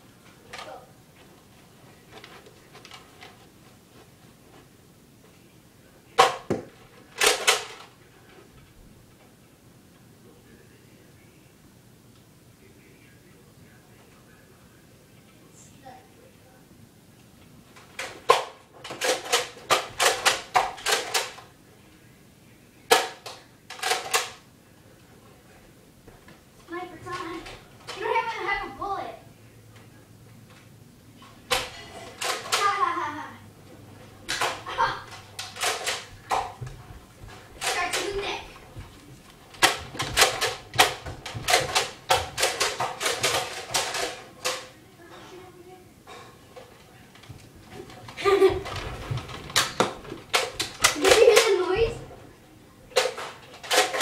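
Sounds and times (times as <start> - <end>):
sharp clacks and knocks: 34.2 - 44.7.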